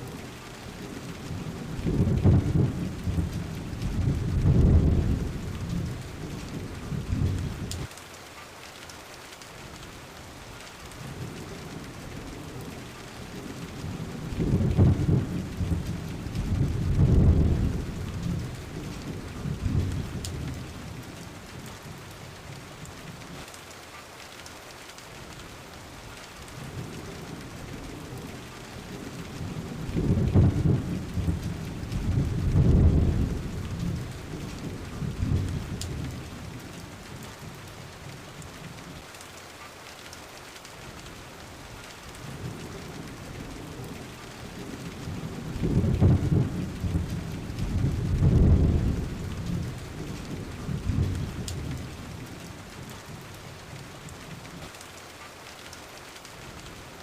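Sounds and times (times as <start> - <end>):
steady rain: 0.0 - 57.0
thunder rumbling: 0.7 - 7.9, 11.0 - 22.6, 26.6 - 39.0, 42.2 - 54.5.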